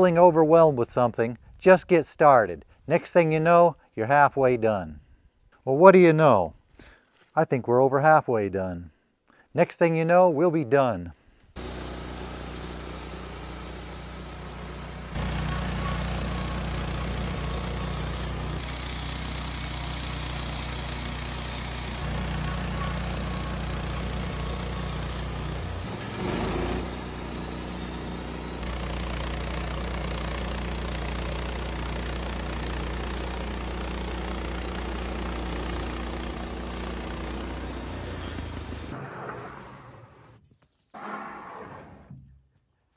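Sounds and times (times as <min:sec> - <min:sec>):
sawmill engine running: 0:11.6 - 0:39.5.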